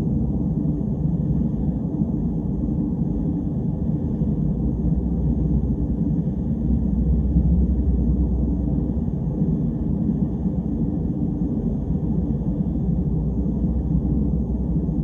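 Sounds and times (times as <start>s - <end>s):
low ambient rumble: 4.4s - 15.0s.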